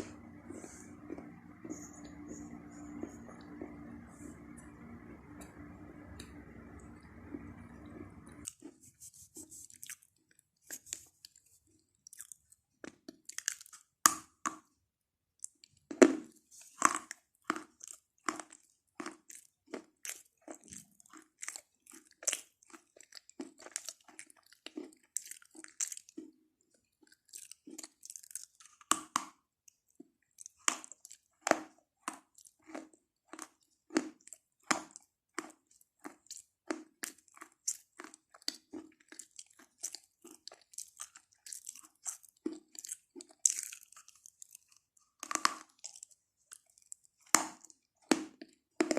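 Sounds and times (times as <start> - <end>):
low steady hum: 0.0 - 8.5
chalk crunching while chewed: 0.0 - 13.9, 15.4 - 48.9.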